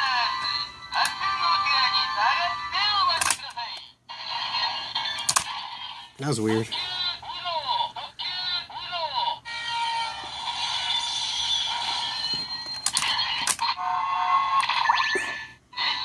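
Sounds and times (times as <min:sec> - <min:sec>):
toy speaker music jingle: 0:00.0 - 0:03.7, 0:06.7 - 0:15.1
toy speaker sound effects: 0:00.0 - 0:16.0
toy clicks: 0:01.0 - 0:01.3, 0:03.1 - 0:03.8, 0:05.1 - 0:05.6, 0:12.8 - 0:13.8.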